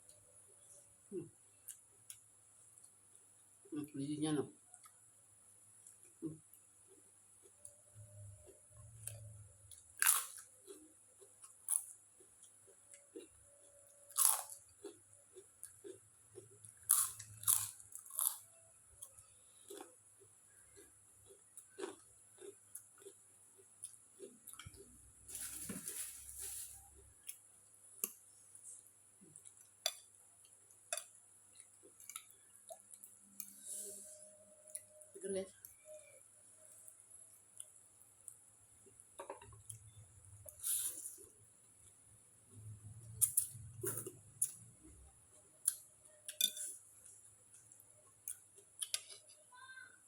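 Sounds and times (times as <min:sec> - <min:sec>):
person chewing noodles: 0:05.8 - 0:25.2, 0:26.9 - 0:35.2, 0:36.7 - 0:49.3
crisp chewing crunches: 0:19.0 - 0:25.4.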